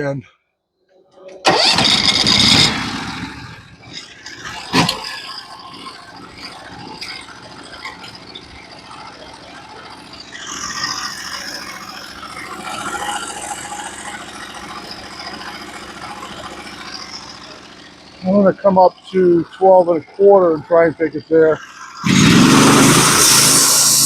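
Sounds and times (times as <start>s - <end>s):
sawmill engine running: 1.1s - 24.0s
hissy machinery noise: 1.3s - 24.0s
sharp machinery clunk: 4.6s - 5.2s.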